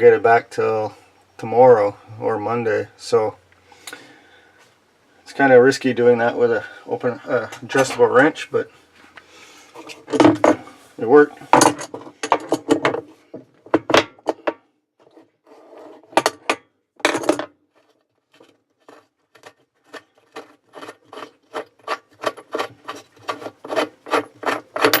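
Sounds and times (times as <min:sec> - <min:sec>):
wrench scraping and clicking on nut: 0:17.8 - 0:25.0.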